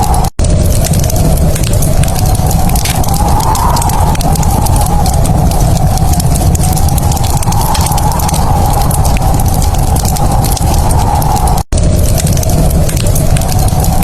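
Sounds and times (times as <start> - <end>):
wood fire crackling: 0.0 - 14.0.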